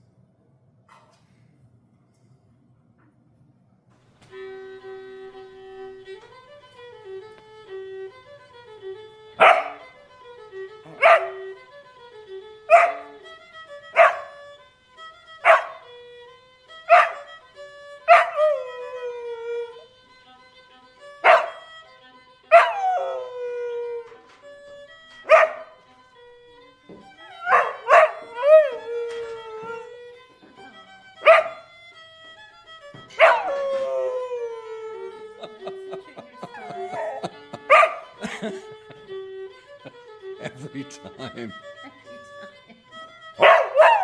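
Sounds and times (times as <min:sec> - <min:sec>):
fiddle music: 0:04.1 - 0:44.0
dog barking sharply: 0:09.4 - 0:09.9, 0:10.9 - 0:11.5, 0:12.7 - 0:13.2, 0:14.0 - 0:14.4, 0:15.4 - 0:15.8, 0:16.9 - 0:17.3, 0:18.1 - 0:18.6, 0:21.2 - 0:21.7, 0:22.5 - 0:22.8, 0:25.3 - 0:25.8, 0:27.4 - 0:28.4, 0:31.2 - 0:31.7, 0:33.2 - 0:33.6, 0:36.5 - 0:38.2, 0:43.4 - 0:44.0.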